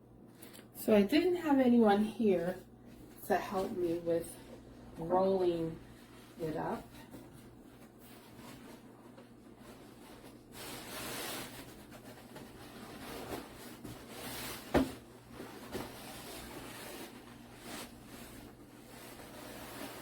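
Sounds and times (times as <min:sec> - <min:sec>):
felt mat rubbing and rustling: 0:05.9 - 0:20.0.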